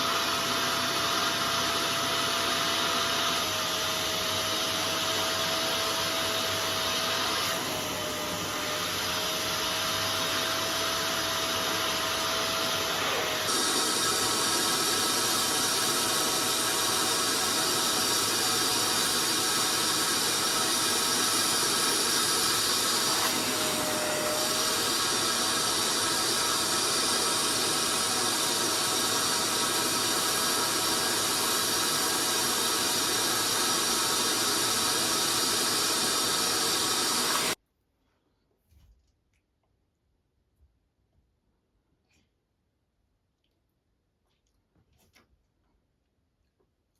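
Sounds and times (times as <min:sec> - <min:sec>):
cleaning machine suction hiss: 0:00.0 - 0:37.6.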